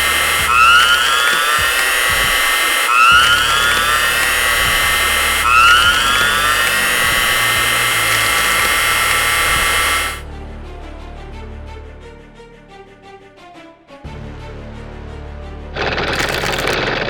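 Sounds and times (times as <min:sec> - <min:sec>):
chainsaw revving: 0:00.0 - 0:10.2, 0:15.8 - 0:17.0
faint music: 0:00.0 - 0:17.0.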